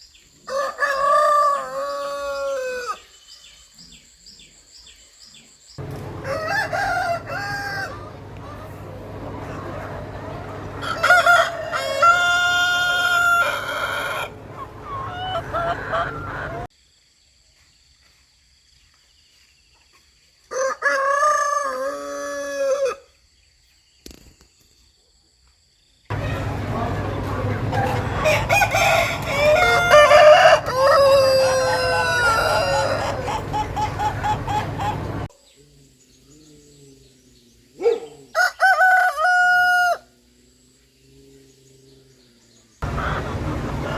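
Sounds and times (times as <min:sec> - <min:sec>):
rooster crowing: 0:00.5 - 0:03.0, 0:05.8 - 0:16.7, 0:20.5 - 0:23.0, 0:26.1 - 0:35.3, 0:38.4 - 0:40.1, 0:42.8 - 0:43.9
steady low hum: 0:05.8 - 0:16.7, 0:26.1 - 0:35.3, 0:42.8 - 0:43.9
short clucking calls: 0:13.2 - 0:16.7, 0:26.1 - 0:35.3.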